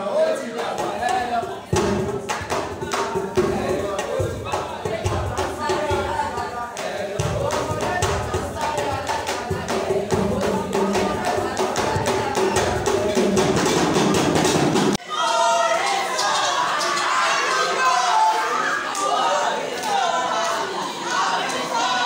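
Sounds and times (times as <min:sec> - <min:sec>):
music with fast dense percussion: 0:00.8 - 0:15.0.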